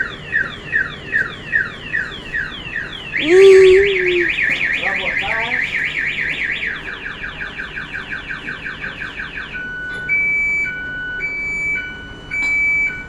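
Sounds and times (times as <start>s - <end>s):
truck reverse siren wailing: 3.2s - 4.3s.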